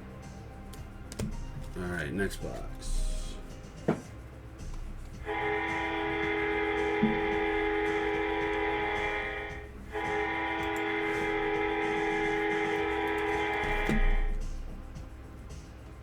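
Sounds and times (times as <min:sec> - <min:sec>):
knock: 0:03.9 - 0:04.1
sustained guitar chords: 0:04.8 - 0:15.2.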